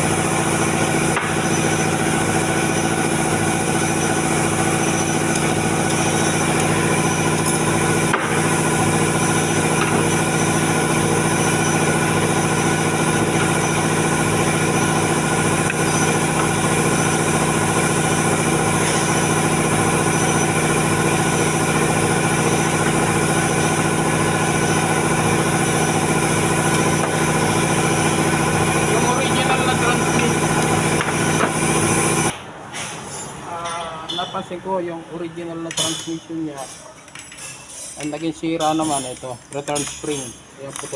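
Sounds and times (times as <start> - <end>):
machine humming: 0.0 - 32.3.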